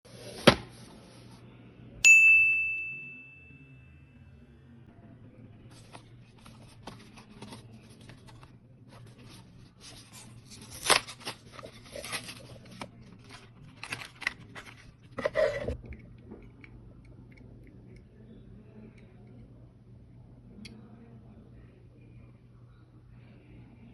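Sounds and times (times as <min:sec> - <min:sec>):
packaging rustling and crackling: 0:05.8 - 0:15.5.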